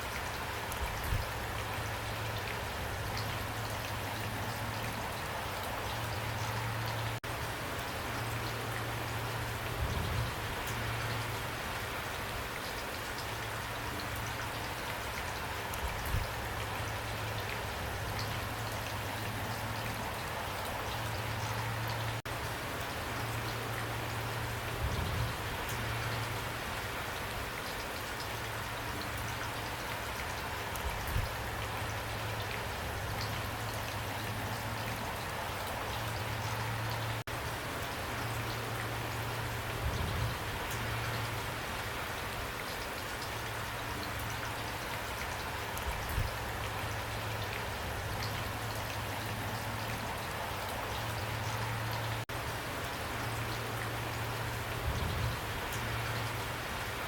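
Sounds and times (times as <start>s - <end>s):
heavy rain pouring: 0.0s - 57.0s.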